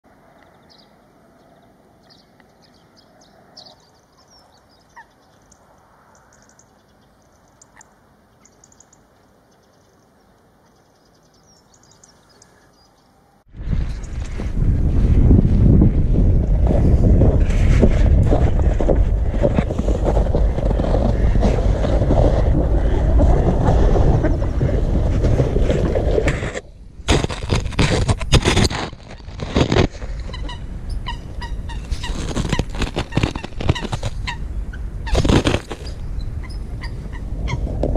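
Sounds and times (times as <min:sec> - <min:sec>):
faint bird chirps: 0:00.3 - 0:13.4
wind buffeting microphone: 0:13.5 - 0:37.9.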